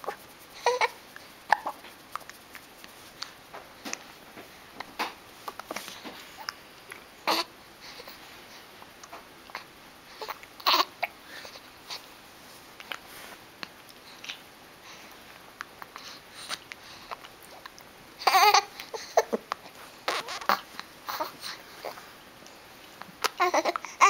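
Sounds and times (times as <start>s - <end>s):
baby babbling: 10.2s - 11.0s, 18.2s - 19.3s, 23.3s - 24.0s.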